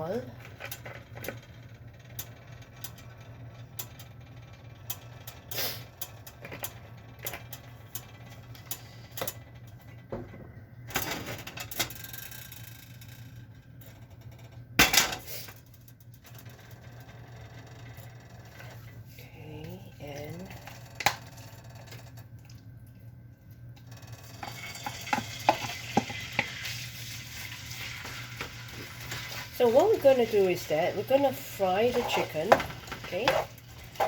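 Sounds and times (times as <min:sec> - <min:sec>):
low steady hum: 0:00.0 - 0:34.0
utensils and containers clicking: 0:24.3 - 0:26.8.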